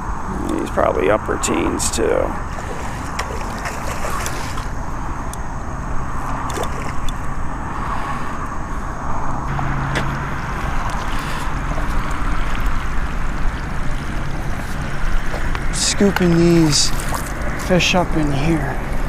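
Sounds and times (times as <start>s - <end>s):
creek water sloshing and trickling: 1.6s - 8.5s, 9.5s - 19.0s
small water splashes: 2.4s - 4.9s, 6.3s - 7.2s, 10.0s - 18.0s.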